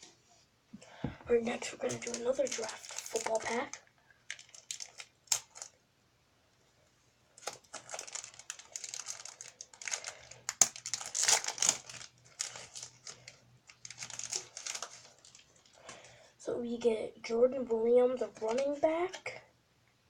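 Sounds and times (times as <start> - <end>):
foil wrapper crinkling: 1.4 - 5.8, 7.4 - 16.2, 18.2 - 18.8.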